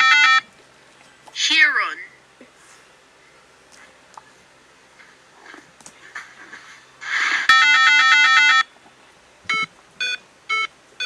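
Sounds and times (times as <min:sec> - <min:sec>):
short electronic beeps: 0:09.5 - 0:10.7.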